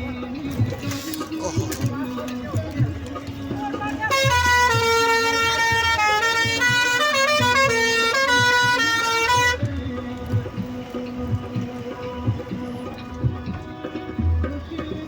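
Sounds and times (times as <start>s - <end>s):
musical vehicle horn tune: 3.9s - 9.7s.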